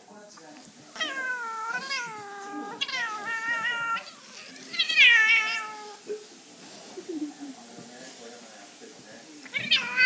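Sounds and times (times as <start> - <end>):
angry cat yowling: 1.0 - 6.0, 9.5 - 10.0.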